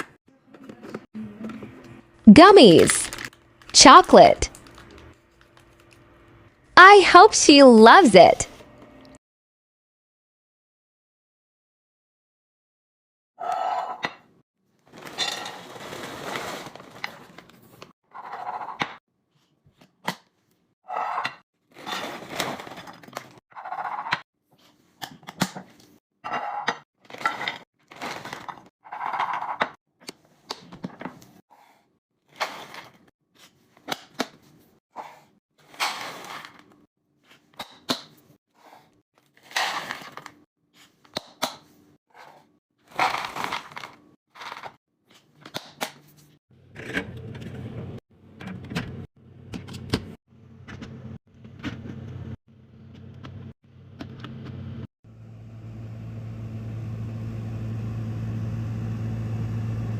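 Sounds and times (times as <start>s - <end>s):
rustling packaging: 3.0s - 3.4s, 14.9s - 17.6s.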